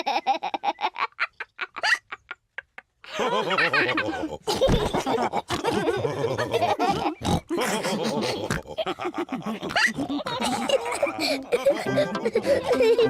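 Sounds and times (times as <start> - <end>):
cartoon pig vocalisation: 5.2 - 10.9.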